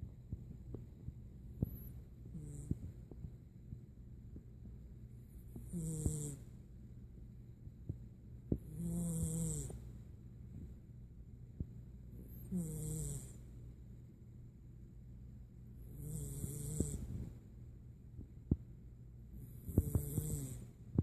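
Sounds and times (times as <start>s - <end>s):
cat snoring: 1.6s - 2.9s, 5.5s - 6.5s, 8.6s - 9.8s, 12.3s - 13.4s, 15.8s - 17.2s, 19.4s - 20.7s.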